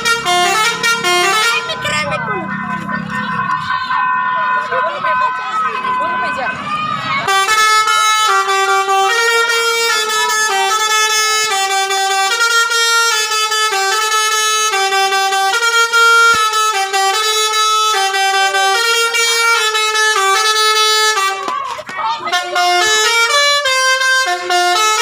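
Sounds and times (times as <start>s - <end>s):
bus air horn playing a melody: 0.0s - 2.2s, 7.2s - 21.5s, 22.2s - 25.0s.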